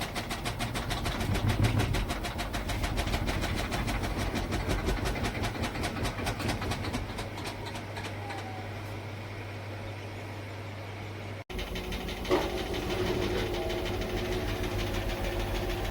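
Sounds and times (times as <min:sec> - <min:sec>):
washing machine clattering: 0:00.0 - 0:08.9, 0:11.5 - 0:15.9
washing machine low hum: 0:00.0 - 0:15.9.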